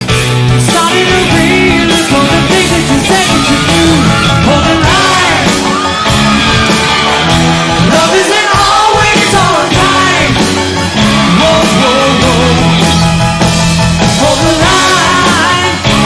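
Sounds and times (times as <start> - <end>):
rock band playing: 0.0 - 16.0
person singing and shouting: 0.6 - 13.0, 14.0 - 16.0.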